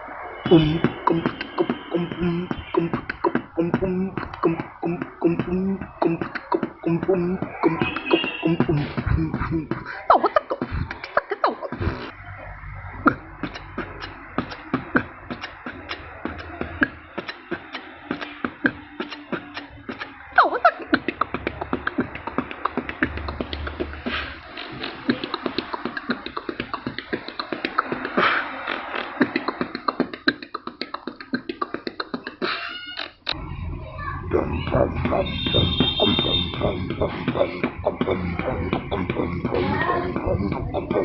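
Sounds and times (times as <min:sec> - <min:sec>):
person beatboxing: 0:00.4 - 0:12.2, 0:12.9 - 0:33.4, 0:34.2 - 0:41.0
low hummed bass: 0:08.5 - 0:09.8, 0:33.4 - 0:41.0.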